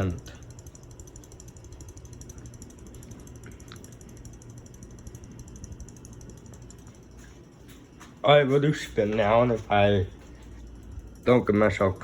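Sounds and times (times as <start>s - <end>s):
fast even ticking: 0.0s - 7.2s
ceiling fan motor hum: 0.0s - 12.0s.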